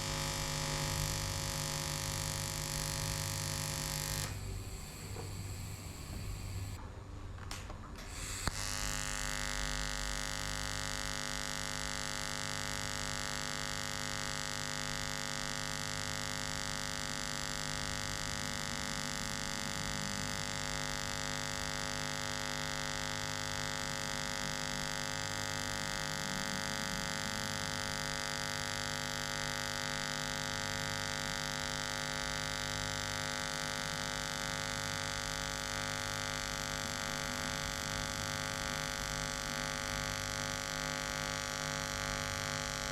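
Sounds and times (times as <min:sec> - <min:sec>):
welding arc buzzing: 0:00.0 - 0:06.8, 0:08.0 - 0:42.9.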